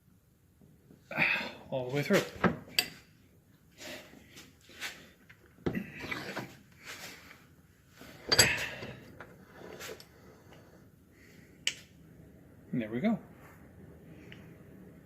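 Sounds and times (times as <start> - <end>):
metal scrapes and clunks: 8.0 - 10.9.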